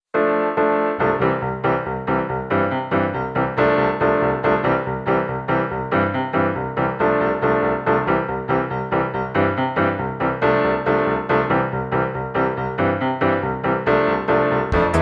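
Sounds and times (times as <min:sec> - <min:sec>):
keyboard melody: 0:14.7 - 0:15.0.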